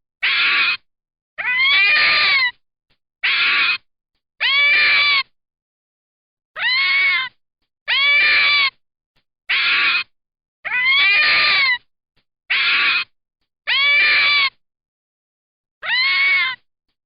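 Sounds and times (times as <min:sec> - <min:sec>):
canid high-pitched calls: 0:00.2 - 0:00.8, 0:01.4 - 0:02.5, 0:03.2 - 0:03.8, 0:04.4 - 0:05.2, 0:06.6 - 0:07.3, 0:07.9 - 0:08.8, 0:09.5 - 0:10.1, 0:10.7 - 0:11.8, 0:12.5 - 0:13.1, 0:13.7 - 0:14.6, 0:15.8 - 0:16.6.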